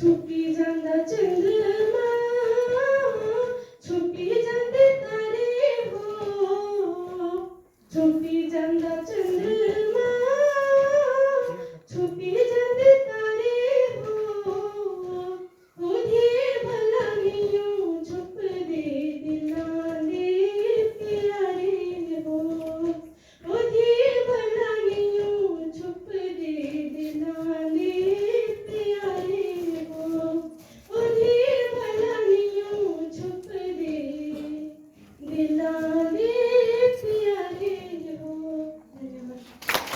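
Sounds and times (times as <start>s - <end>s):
girl singing folk song: 0.0s - 39.9s.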